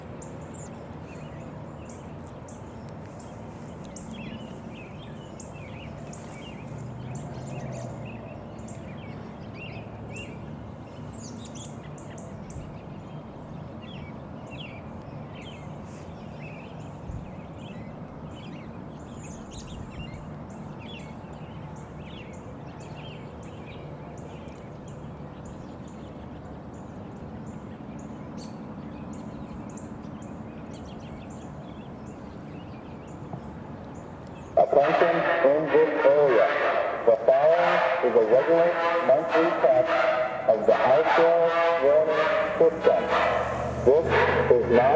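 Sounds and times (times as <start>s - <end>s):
low outdoor rumble: 0.0s - 44.9s
small birds chirping: 0.2s - 35.6s.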